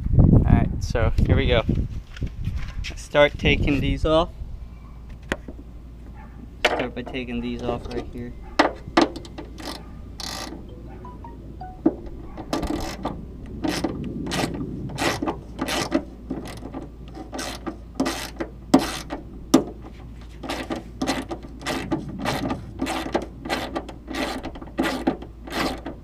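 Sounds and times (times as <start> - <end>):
hand ratchet clicking: 9.0 - 10.6, 12.5 - 19.2, 20.4 - 26.0.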